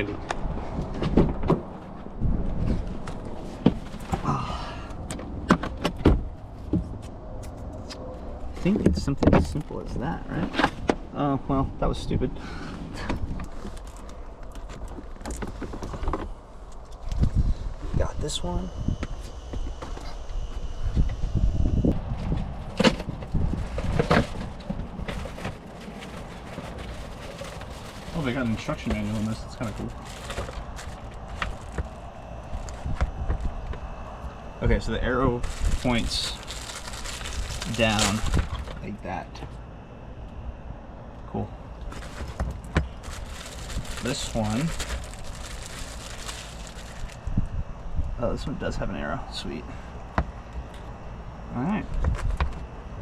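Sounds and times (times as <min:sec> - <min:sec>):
wind buffeting microphone: 0:00.0 - 0:04.1, 0:11.8 - 0:38.7, 0:42.0 - 0:48.8.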